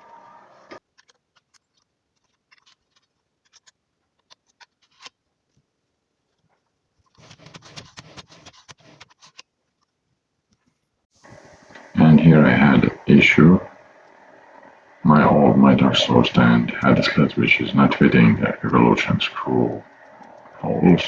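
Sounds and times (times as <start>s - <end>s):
small parts clicking: 1.0s - 5.2s.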